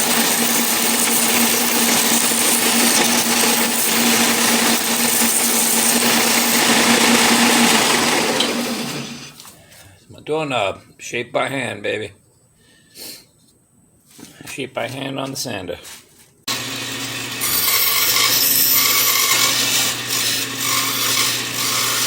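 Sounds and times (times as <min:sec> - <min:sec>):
electric sander grinding wood: 0:00.0 - 0:09.4, 0:16.5 - 0:22.0.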